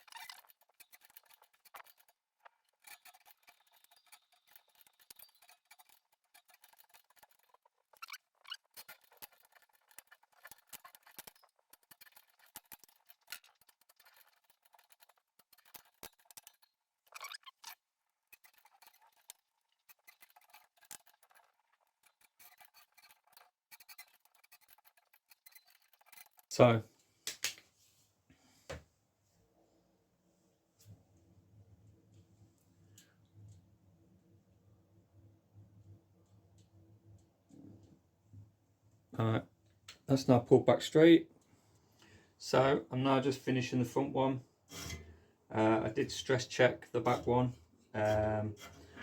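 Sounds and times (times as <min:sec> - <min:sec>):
small clicks of bicycle wheel work: 0:00.0 - 0:26.5.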